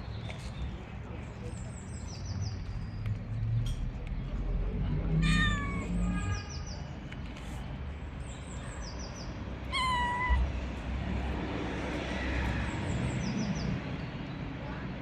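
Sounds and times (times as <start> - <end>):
cat meowing: 5.1 - 6.4, 9.6 - 10.5.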